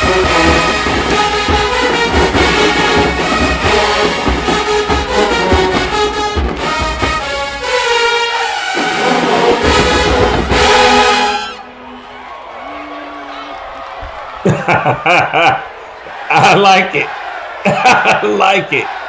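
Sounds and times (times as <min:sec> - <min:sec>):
pounding bass drums: 0:00.0 - 0:07.7
brass horns: 0:00.0 - 0:14.0
marching band playing: 0:00.0 - 0:14.3.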